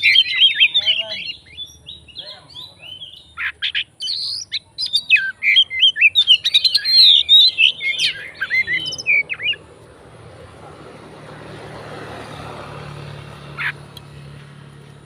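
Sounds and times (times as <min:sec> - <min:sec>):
bird singing whistled song: 0:00.0 - 0:09.6
faint traffic rumble: 0:00.0 - 0:15.0.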